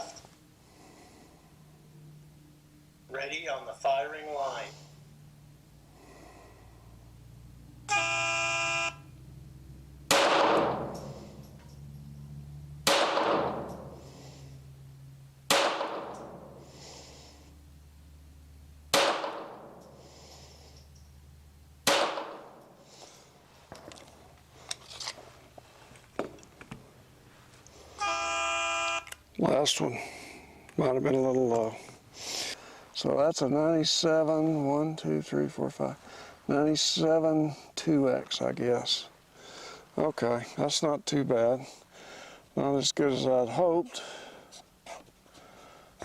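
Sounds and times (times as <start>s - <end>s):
pitched start tone: 7.6s - 10.1s, 27.9s - 29.2s
pistol shots ringing out: 10.1s - 11.1s, 12.8s - 14.0s, 15.5s - 16.6s, 18.9s - 19.8s, 21.8s - 22.6s.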